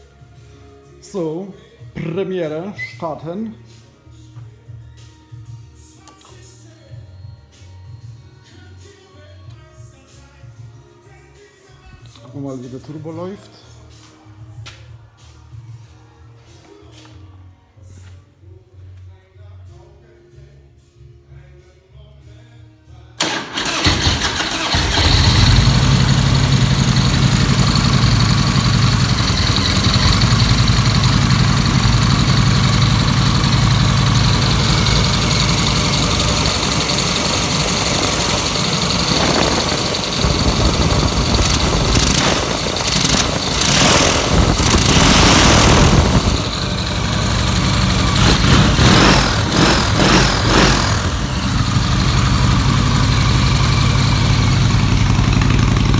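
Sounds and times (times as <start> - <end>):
motorcycle engine revving: 23.2 - 55.9
motorcycle engine starting: 23.2 - 55.9.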